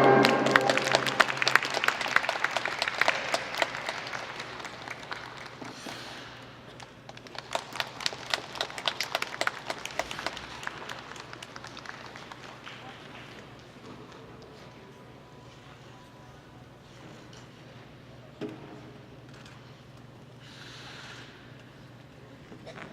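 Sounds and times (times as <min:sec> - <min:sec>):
audience applauding: 0:00.0 - 0:05.6.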